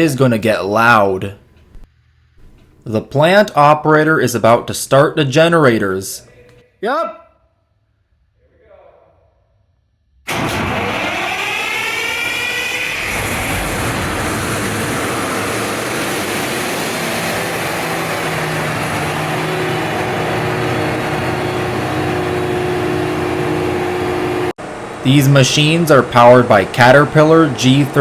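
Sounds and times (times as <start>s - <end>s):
gas engines running loud: 10.3s - 28.0s.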